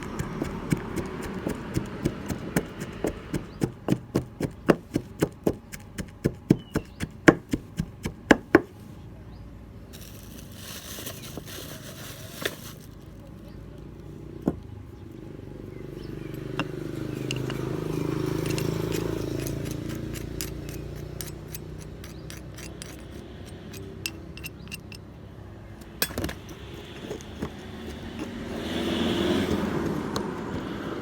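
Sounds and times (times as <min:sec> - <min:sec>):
pounding in metal mortar: 0:00.0 - 0:08.7, 0:16.5 - 0:25.0.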